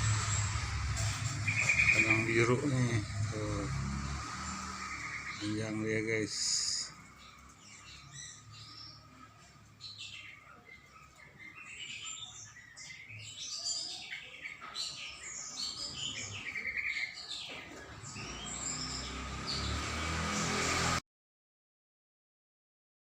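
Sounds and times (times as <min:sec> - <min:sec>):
rushing noise with low rumble: 0:00.0 - 0:05.4
songbird singing: 0:00.0 - 0:20.9.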